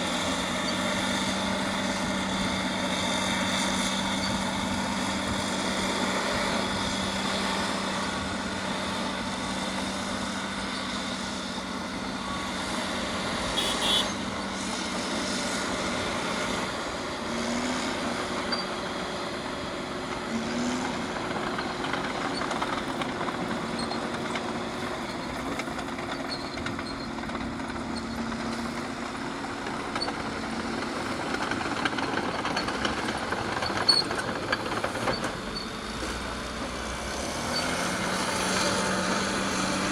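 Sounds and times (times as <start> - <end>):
bulldozer diesel engine: 0.0 - 39.9.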